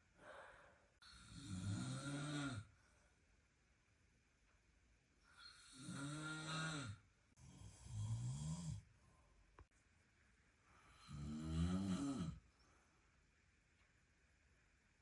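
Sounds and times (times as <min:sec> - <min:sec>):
person snoring: 0:01.0 - 0:02.7, 0:05.5 - 0:08.8, 0:10.9 - 0:12.4.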